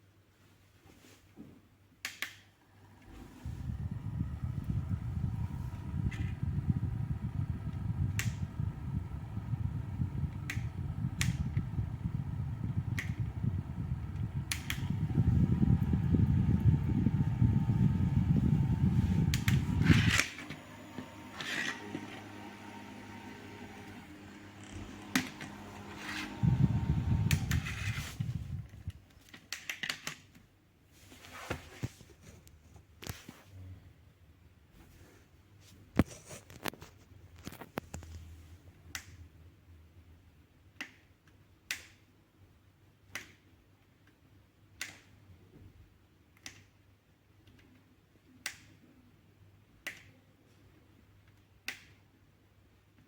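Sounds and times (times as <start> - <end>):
faint steady hum: 2.6 - 29.1
faint steady whine: 2.7 - 29.0
fan airflow rushing: 2.7 - 29.0
low rumble and bumping: 3.1 - 29.0.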